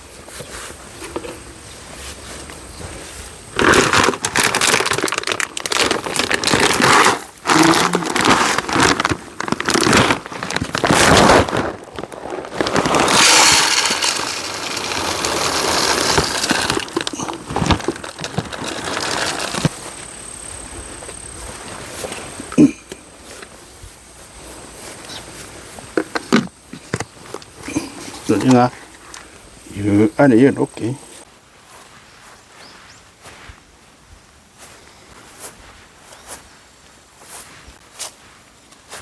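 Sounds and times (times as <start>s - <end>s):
material rustling and crackling: 3.6s - 19.7s.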